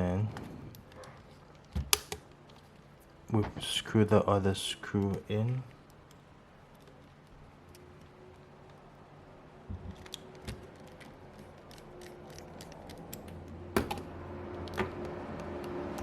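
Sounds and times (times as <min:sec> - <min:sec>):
screwdriver clicks and ticks: 0:09.9 - 0:16.0.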